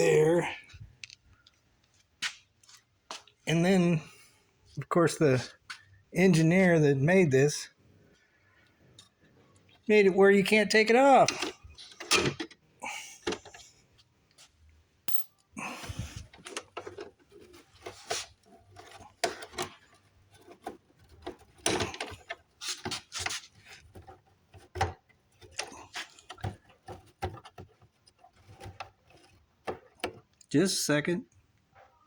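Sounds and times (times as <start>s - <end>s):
hand tools clicking and scraping: 10.9s - 13.8s, 15.1s - 30.6s.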